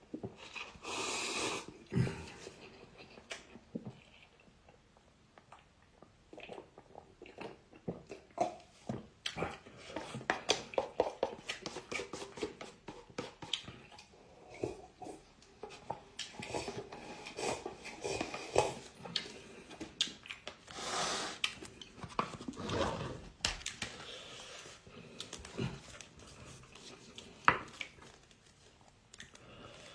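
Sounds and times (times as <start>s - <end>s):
person chewing noodles: 0.1s - 22.9s, 23.6s - 29.9s
slurping: 13.5s - 23.3s.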